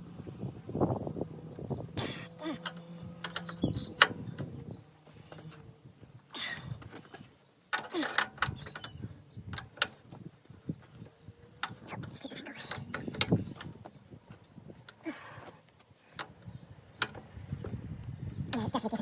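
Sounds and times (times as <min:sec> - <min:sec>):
threaded fitting clicking and creaking: 0:02.2 - 0:04.6, 0:06.4 - 0:18.7.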